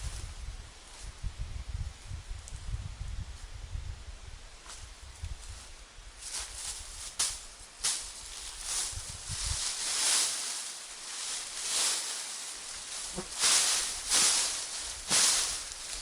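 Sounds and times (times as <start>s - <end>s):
rustling and crunching: 4.6s - 16.0s.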